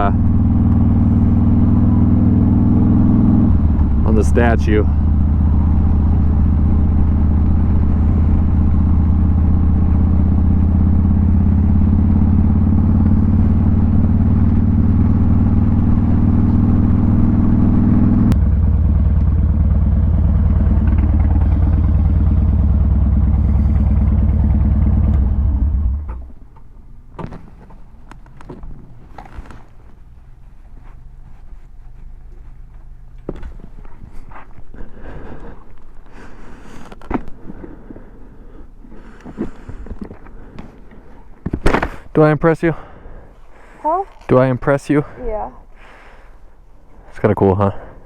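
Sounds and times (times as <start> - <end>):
motorcycle engine running: 0.0 - 26.3.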